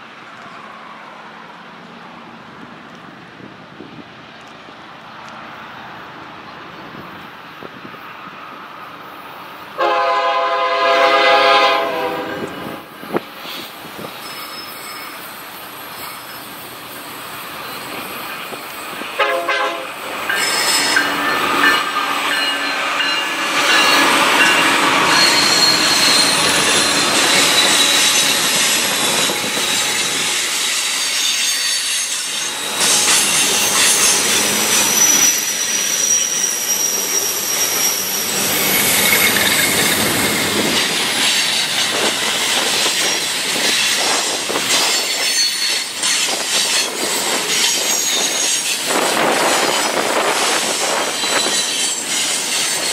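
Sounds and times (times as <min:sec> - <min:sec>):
freight train rolling: 0:00.0 - 0:52.9
train wheels squealing: 0:12.2 - 0:19.2, 0:19.9 - 0:52.9.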